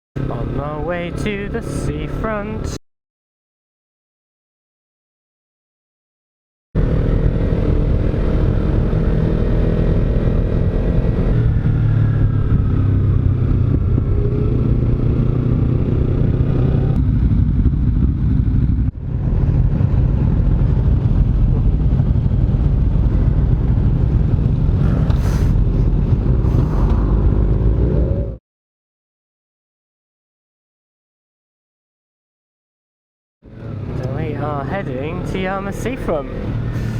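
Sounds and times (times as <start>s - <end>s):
wind noise: 6.8s - 28.4s
motorcycle engine running: 10.0s - 28.4s.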